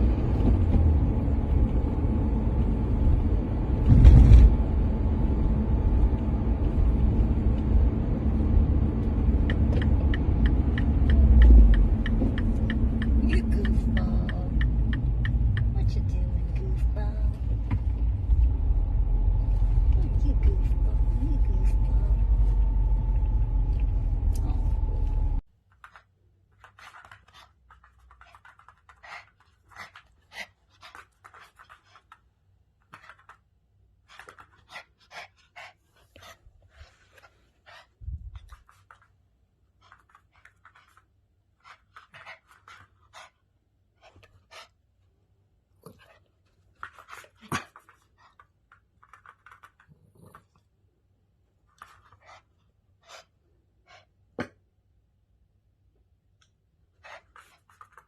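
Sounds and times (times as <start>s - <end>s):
loud rumble: 0.0s - 25.4s
dog panting: 26.6s - 32.2s, 34.1s - 38.9s, 41.6s - 44.8s, 51.8s - 54.1s.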